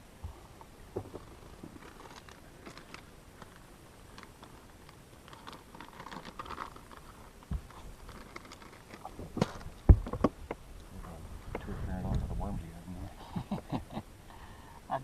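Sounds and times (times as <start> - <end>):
gear clicking and rustling: 0.3 - 10.6.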